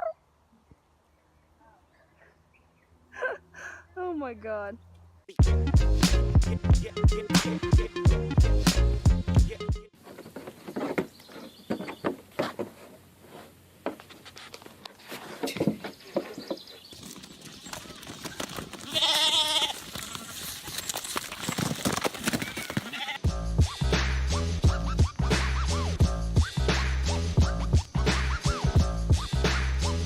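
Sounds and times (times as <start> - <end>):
short knocks and scuffs: 10.1 - 16.8
farm animal bleating: 18.8 - 20.6, 22.4 - 23.3.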